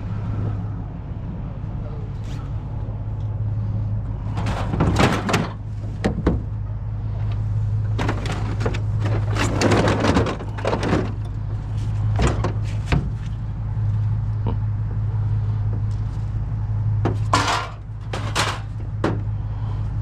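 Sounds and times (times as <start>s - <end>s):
vehicle engine idling: 0.0s - 20.0s
knocks clunks and rattling: 2.2s - 13.7s, 15.7s - 19.6s.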